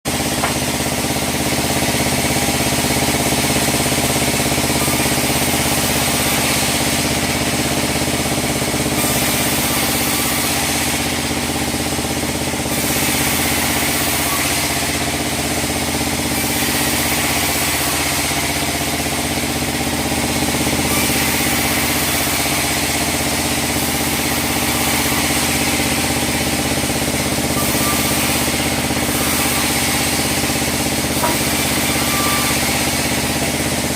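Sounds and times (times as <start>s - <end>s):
band sawmill humming: 0.1s - 33.9s
saw blade high hiss: 12.8s - 33.9s.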